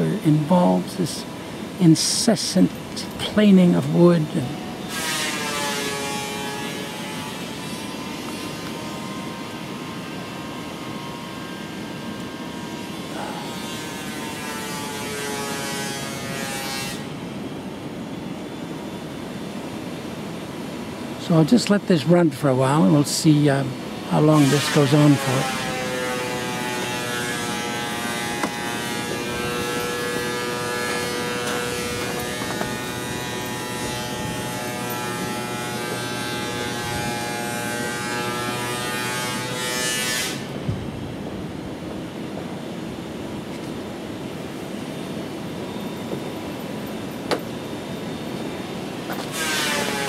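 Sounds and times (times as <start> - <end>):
dull steady noise: 0.0 - 50.0
planing machine whining: 3.9 - 17.1, 24.0 - 40.5, 49.1 - 50.0.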